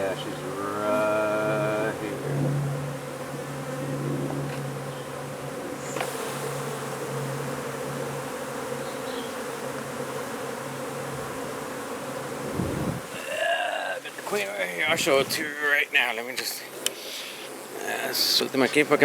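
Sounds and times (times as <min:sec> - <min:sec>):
honey bees buzzing: 0:00.0 - 0:19.0.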